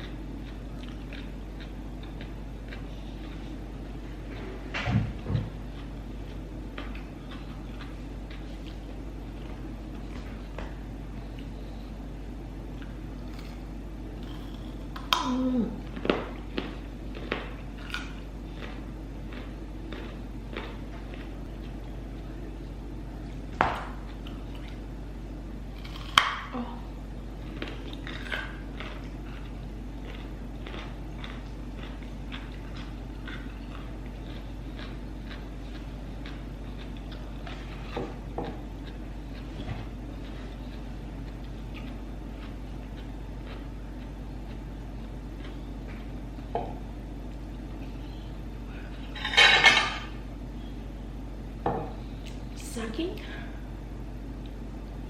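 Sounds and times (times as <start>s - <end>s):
chewing clicks: 0.0s - 3.4s, 40.2s - 44.6s
chewing: 0.0s - 4.8s, 5.4s - 10.6s, 12.7s - 24.9s, 25.8s - 26.5s, 27.4s - 46.5s
steady low hum: 0.0s - 55.0s
eating sounds close to microphone: 25.7s - 46.2s.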